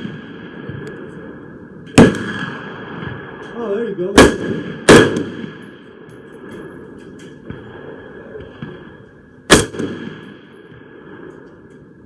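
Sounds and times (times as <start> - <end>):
rifle shot: 0.0 - 1.1, 1.9 - 3.4, 4.0 - 6.0, 9.5 - 11.3.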